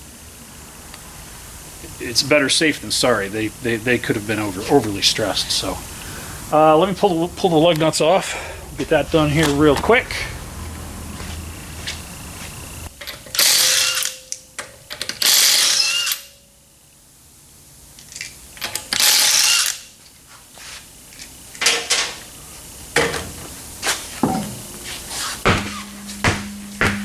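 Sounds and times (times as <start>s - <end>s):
impact wrench spinning lug nuts: 13.2s - 14.2s, 15.1s - 16.3s, 18.7s - 19.9s.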